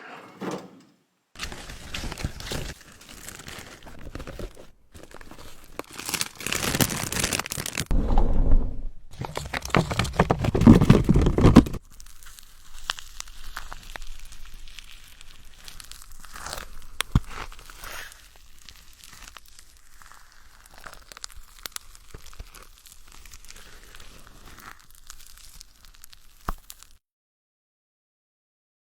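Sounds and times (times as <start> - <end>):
plastic packaging crinkling and tearing: 1.4 - 8.0, 9.1 - 27.0
plastic rustling: 1.4 - 8.0, 9.1 - 27.0.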